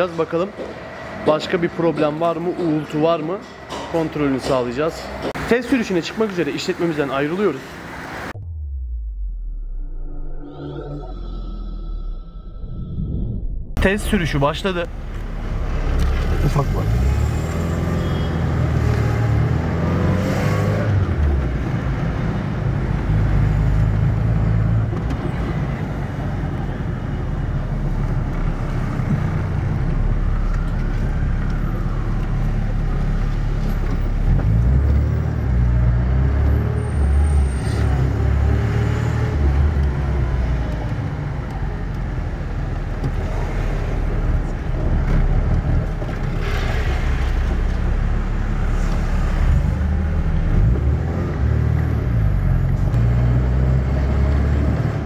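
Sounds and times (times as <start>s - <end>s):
road noise inside car: 13.8s - 55.0s.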